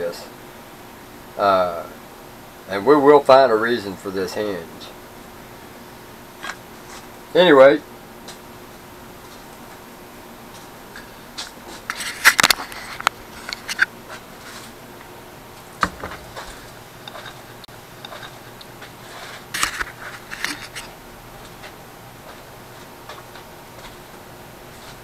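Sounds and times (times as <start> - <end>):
metal parts clicking and scraping: 19.5 - 20.9.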